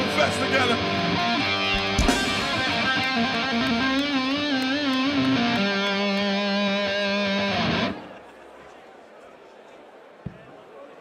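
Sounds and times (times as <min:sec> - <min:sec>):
electric guitar with vibrato: 0:00.0 - 0:08.1.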